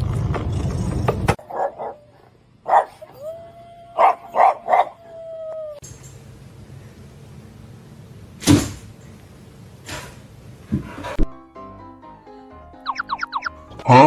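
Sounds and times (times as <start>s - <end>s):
dog barking: 1.4s - 3.1s, 4.0s - 5.0s.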